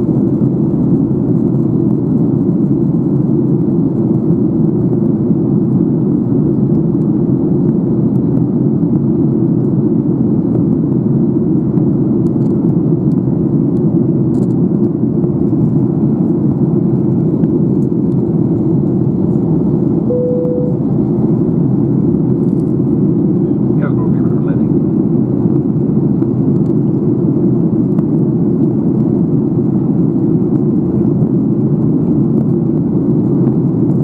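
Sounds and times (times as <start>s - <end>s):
airplane cabin engine rumble: 0.0s - 34.0s
single tone: 20.1s - 21.2s.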